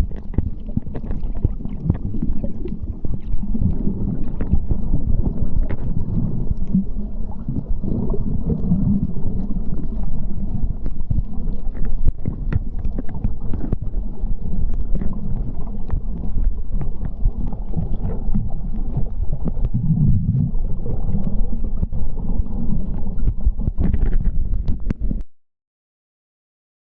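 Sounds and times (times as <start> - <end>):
sharp clicks and crackles: 0.0 - 14.0, 14.6 - 25.3
muffled underwater rumble: 0.0 - 25.3.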